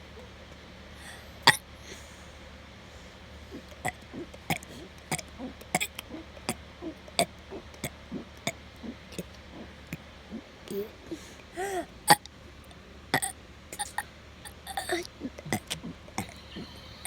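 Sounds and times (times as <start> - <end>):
child gulping clicks: 3.5 - 12.3, 13.2 - 16.4
child burping: 3.6 - 6.6, 13.2 - 16.6.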